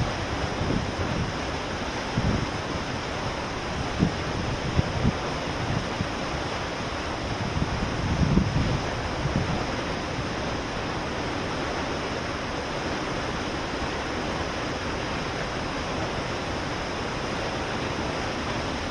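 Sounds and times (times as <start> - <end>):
wind buffeting microphone: 0.0 - 12.1
waterfall rushing: 0.0 - 18.9.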